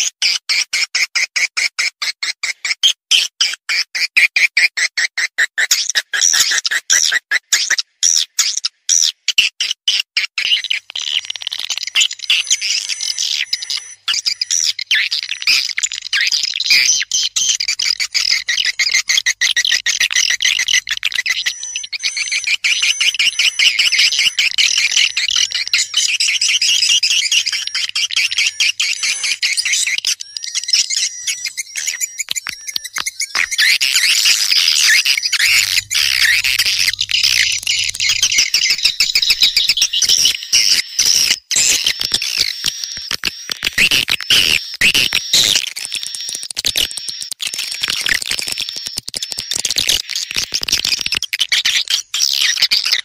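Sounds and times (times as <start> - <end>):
swiftlets twittering: 11.3 - 50.9.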